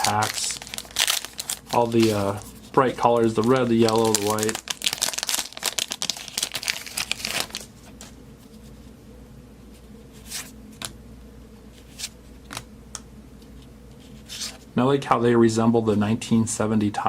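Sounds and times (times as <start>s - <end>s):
wrapper crinkling as torn open: 0.0s - 7.7s.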